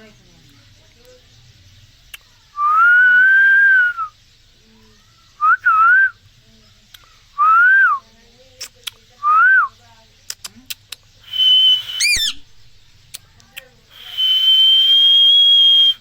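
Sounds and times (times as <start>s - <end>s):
parrot whistling and chirping: 11.2s - 12.6s, 13.9s - 16.0s.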